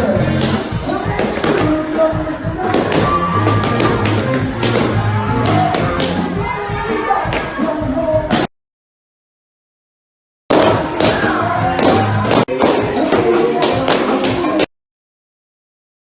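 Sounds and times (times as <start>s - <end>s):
loud music with beat and bass: 0.0s - 8.5s, 10.5s - 14.7s.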